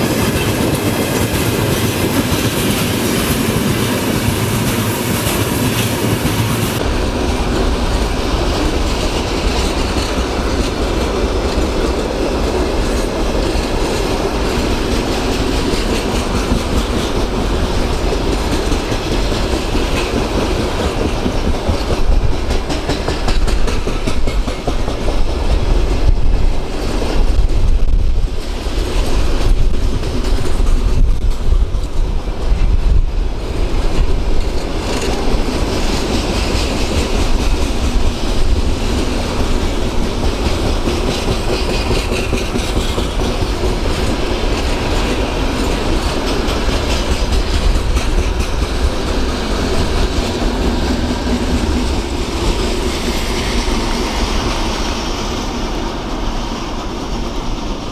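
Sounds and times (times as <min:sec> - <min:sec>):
train rumble: 0:00.0 - 0:57.9.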